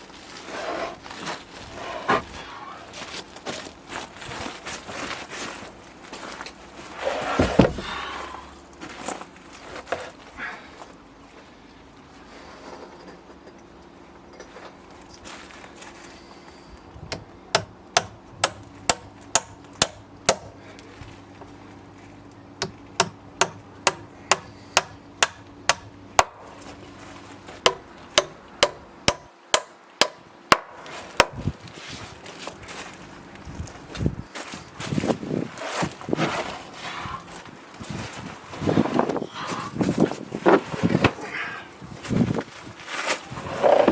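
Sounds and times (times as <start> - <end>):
hammer driving nails into wood: 22.6 - 26.4.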